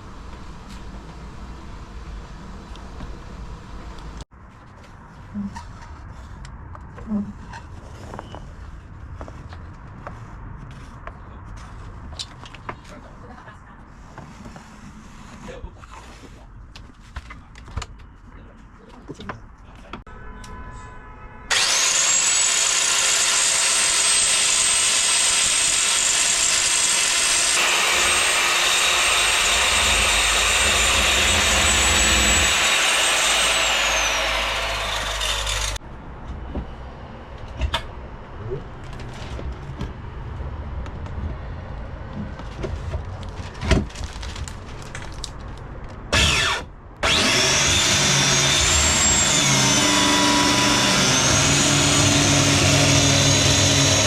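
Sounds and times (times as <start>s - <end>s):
power tool high whine: 21.5s - 35.8s, 46.1s - 54.0s.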